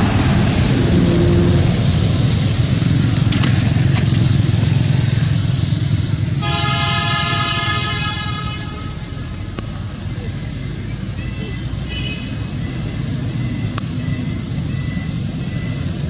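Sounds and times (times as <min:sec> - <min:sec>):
passing vehicle rumble: 0:00.0 - 0:16.0
vehicle horn long note: 0:06.4 - 0:09.6, 0:11.9 - 0:12.4.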